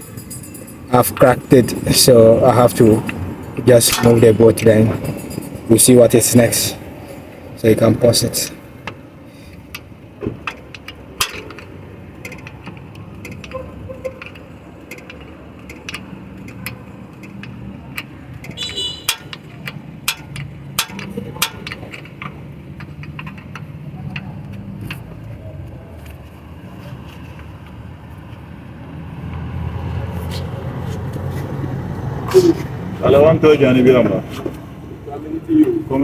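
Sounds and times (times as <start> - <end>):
metallic clicks of tools on nut: 2.9 - 5.7, 8.8 - 25.1.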